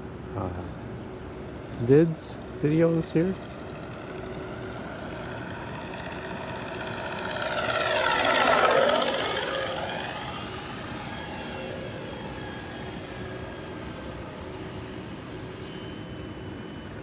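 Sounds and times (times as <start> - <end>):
simulated engine sound: 1.8 - 12.8
model plane passing by: 1.9 - 17.0.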